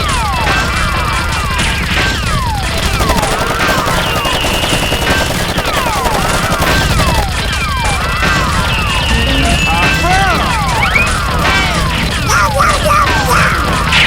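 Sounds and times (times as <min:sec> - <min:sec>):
rapid gunfire: 0:00.0 - 0:14.0
whistle-like glides: 0:07.9 - 0:11.4.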